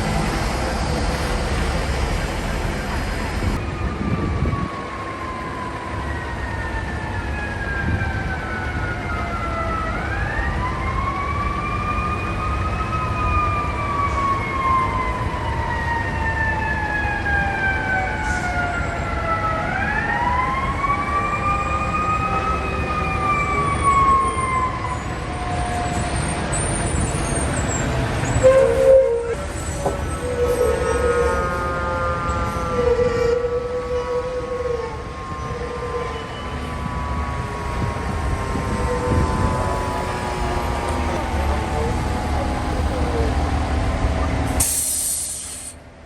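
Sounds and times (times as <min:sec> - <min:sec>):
fire truck siren wailing: 0:00.0 - 0:45.8
street and engine noise: 0:00.0 - 0:46.0.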